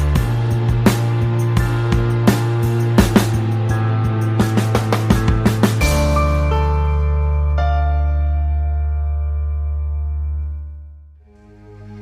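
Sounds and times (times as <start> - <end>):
sustained keyboard chords: 0.0 - 12.0
low bass note: 5.4 - 12.0.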